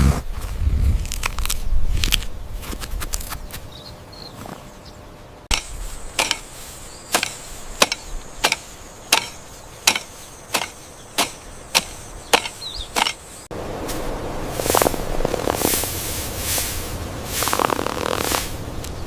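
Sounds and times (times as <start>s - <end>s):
hand tool chopping strikes: 5.5s - 6.5s, 7.1s - 13.3s.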